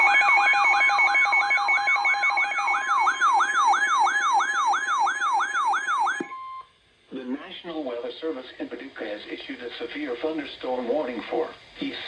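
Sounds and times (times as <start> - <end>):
downward sweeping siren tone: 0.0 - 6.3.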